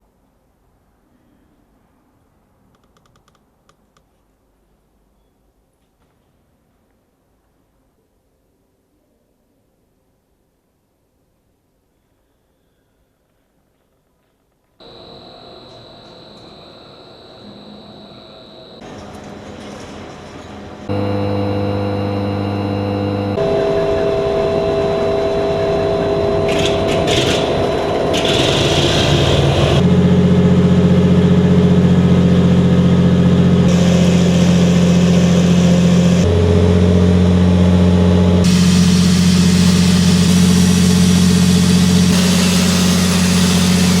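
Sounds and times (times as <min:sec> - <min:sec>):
generator engine running loudly: 0:14.8 - 0:44.0.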